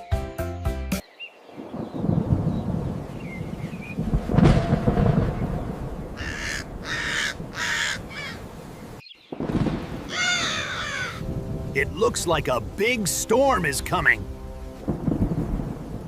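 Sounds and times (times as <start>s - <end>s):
thunder rumbling: 1.6s - 16.0s
crow cawing: 6.2s - 8.5s, 10.1s - 11.3s.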